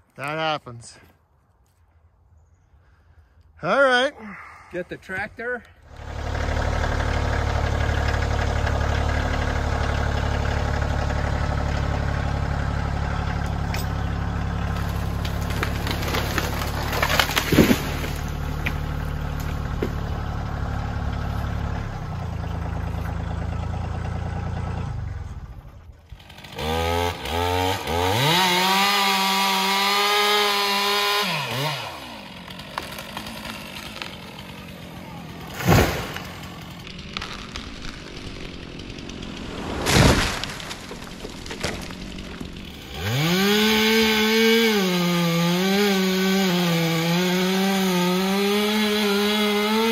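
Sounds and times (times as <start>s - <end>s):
tractor engine running: 5.1s - 28.0s, 32.0s - 44.3s
chainsaw revving: 5.9s - 22.4s, 26.1s - 49.9s.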